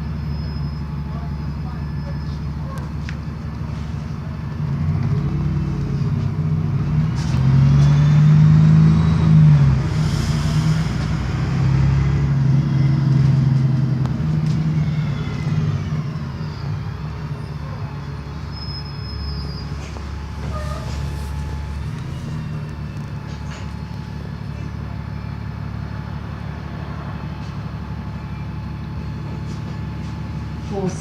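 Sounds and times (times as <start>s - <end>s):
bus engine pulling: 0.0s - 31.0s
transmission whine: 8.9s - 26.2s.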